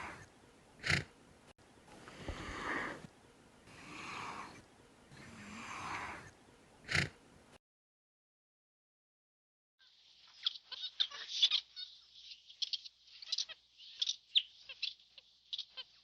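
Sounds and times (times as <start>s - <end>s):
animal snoring: 0.8s - 1.1s, 3.7s - 4.6s, 5.2s - 6.3s, 6.9s - 7.2s
animal snorting: 0.8s - 1.1s, 6.8s - 7.2s.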